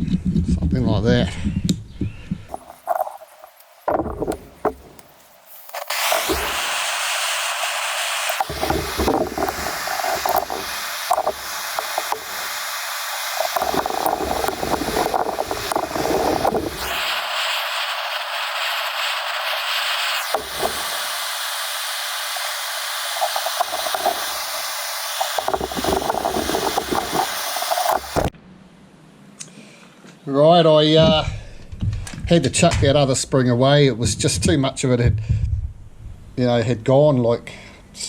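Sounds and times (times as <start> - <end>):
low rumbling handling noise: 2.0 - 5.4
blowtorch flame hissing: 2.5 - 28.3.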